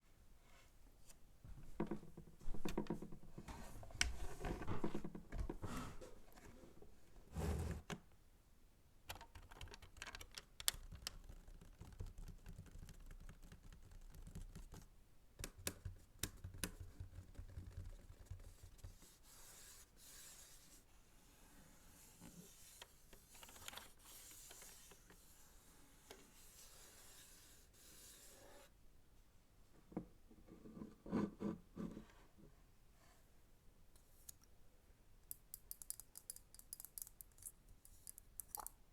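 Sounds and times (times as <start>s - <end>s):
computer keyboard keys clicking: 9.1s - 11.2s.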